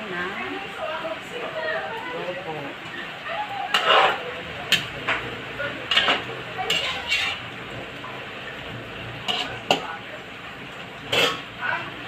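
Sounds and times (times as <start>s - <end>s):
metal spoon scraping cooking pot: 3.7s - 4.8s, 5.9s - 7.5s, 9.2s - 9.8s, 11.1s - 11.5s.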